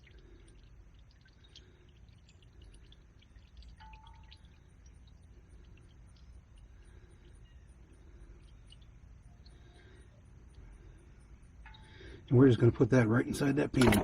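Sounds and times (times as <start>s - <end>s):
oil dripping into a pan: 0.0s - 12.3s
low background rumble: 0.0s - 14.0s.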